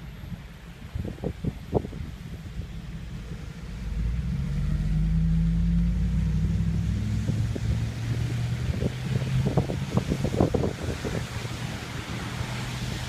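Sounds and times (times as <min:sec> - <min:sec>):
vehicle engine driving past: 0:03.2 - 0:13.0.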